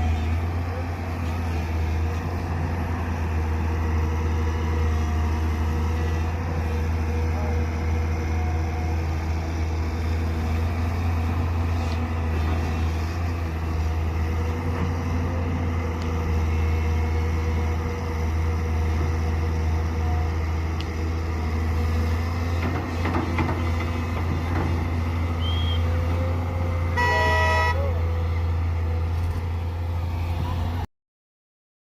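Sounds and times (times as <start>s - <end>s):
diesel engines droning: 0.0s - 30.9s
vehicle horn honk: 27.0s - 27.9s.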